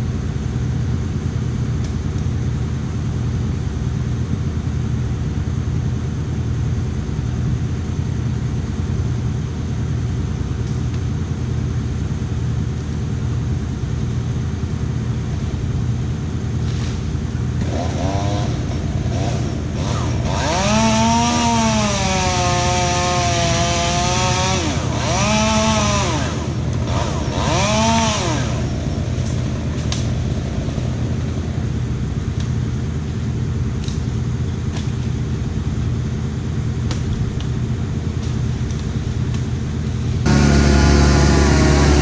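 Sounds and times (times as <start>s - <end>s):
larger engine droning: 0.0s - 42.0s
chainsaw revving: 17.6s - 31.7s, 40.2s - 42.0s.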